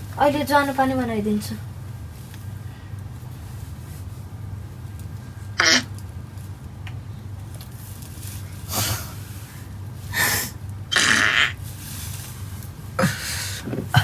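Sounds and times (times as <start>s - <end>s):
hissing fart noises: 5.6s - 5.9s, 10.1s - 11.6s, 13.0s - 14.0s.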